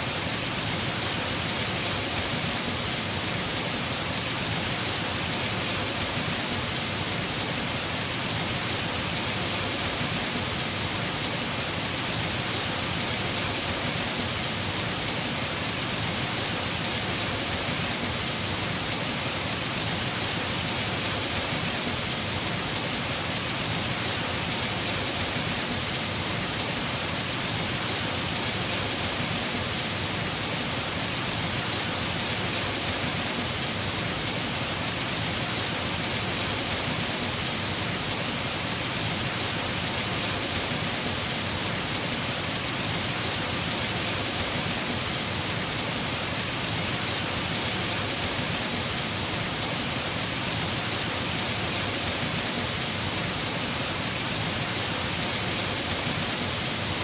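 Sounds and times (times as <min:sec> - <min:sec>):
heavy rain on roof: 0:00.0 - 0:57.0.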